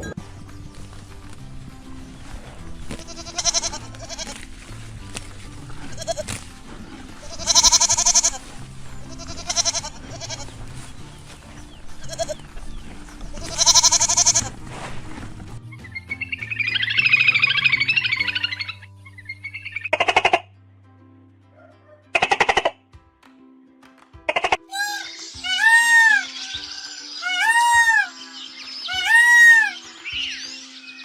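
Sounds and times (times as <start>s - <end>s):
background music: 0.0s - 31.0s
sheep or goats bleating: 2.9s - 4.6s, 5.8s - 10.6s, 12.0s - 12.5s, 13.4s - 14.6s, 24.7s - 26.3s, 27.2s - 28.1s, 28.9s - 29.8s.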